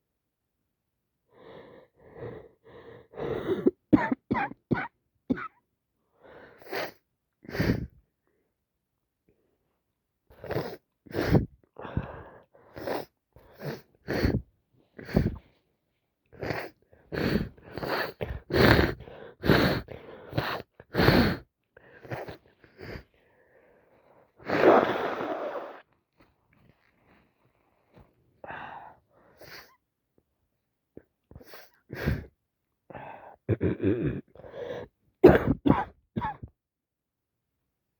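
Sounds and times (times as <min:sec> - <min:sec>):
person sneezing: 0:24.4 - 0:25.8.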